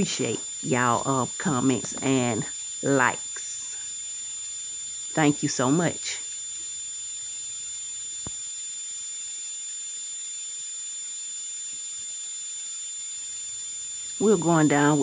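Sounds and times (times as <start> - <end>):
high-pitched whine: 0.0 - 15.0.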